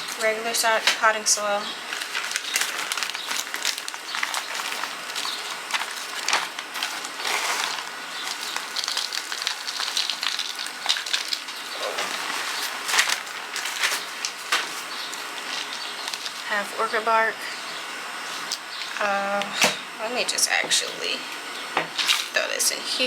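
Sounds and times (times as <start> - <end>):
soil rustling and crunching: 0.0 - 16.7.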